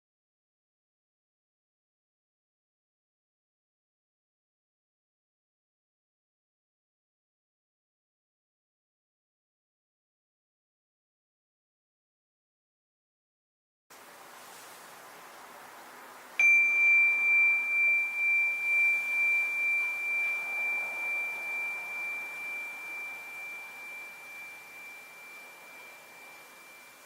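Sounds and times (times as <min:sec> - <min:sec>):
faint hiss: 0:13.9 - 0:27.0
small bowl bell ringing: 0:16.4 - 0:27.0.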